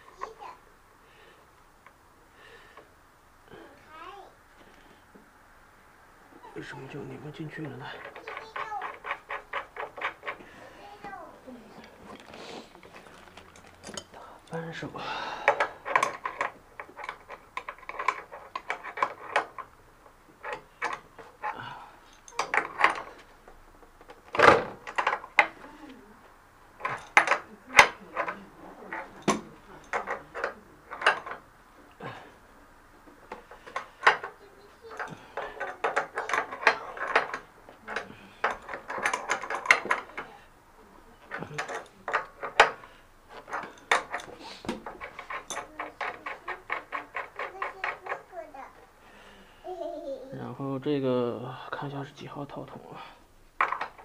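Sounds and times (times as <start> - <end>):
metal tools clicking and knocking: 7.6 - 10.5, 12.9 - 14.6, 15.3 - 19.8, 20.4 - 25.6, 26.8 - 32.4, 33.0 - 40.5, 41.2 - 48.3, 53.6 - 54.0
wrench ratcheting: 33.6 - 40.2.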